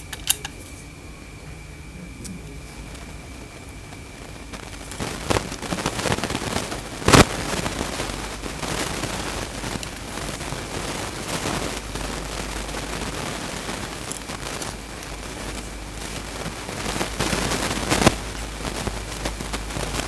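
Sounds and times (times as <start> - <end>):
scattered clicks: 0.0 - 6.3
crackling handling noise: 0.0 - 20.0.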